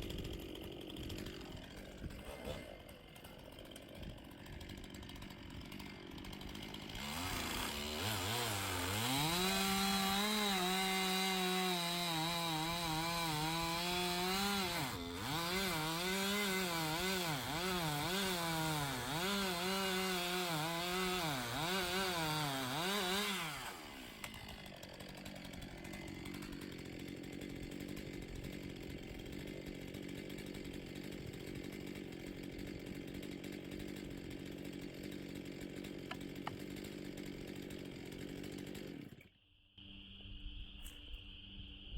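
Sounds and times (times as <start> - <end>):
chainsaw cutting wood: 0.0 - 41.6.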